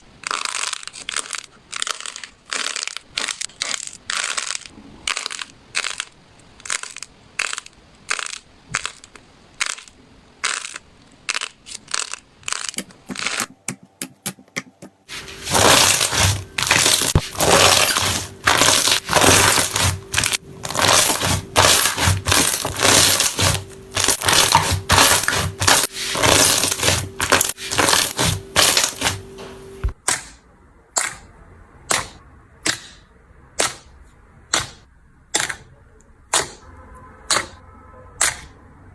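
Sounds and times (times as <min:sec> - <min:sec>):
slime popping and crackling: 0:00.0 - 0:30.0.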